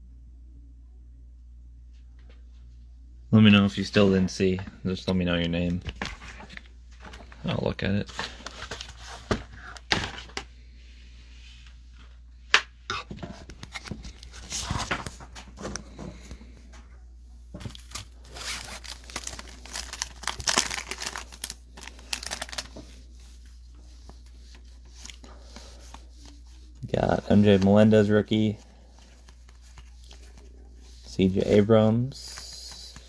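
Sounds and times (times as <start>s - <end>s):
wrapper tearing and crinkling: 17.7s - 22.9s.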